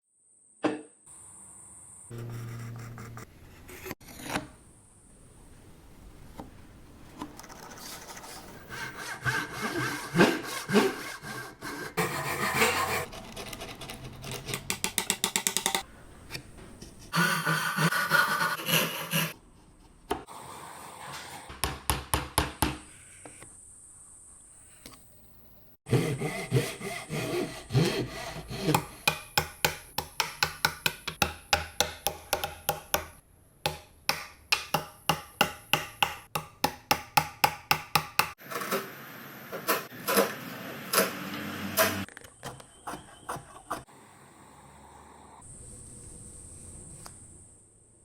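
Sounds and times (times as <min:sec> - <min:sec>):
hand saw cutting wood: 0:08.1 - 0:14.7, 0:17.1 - 0:19.4, 0:25.9 - 0:29.2, 0:41.0 - 0:43.9.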